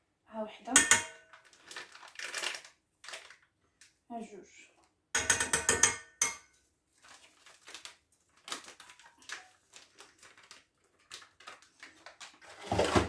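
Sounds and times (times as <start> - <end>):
spoon knocking against pot: 0.8 - 1.2, 5.2 - 6.4.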